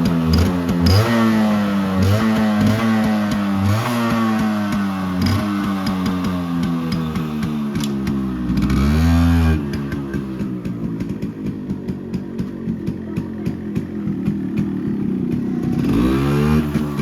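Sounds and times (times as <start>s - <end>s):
two-stroke engine revving and idling: 0.0s - 17.0s
engine pops: 9.6s - 17.0s.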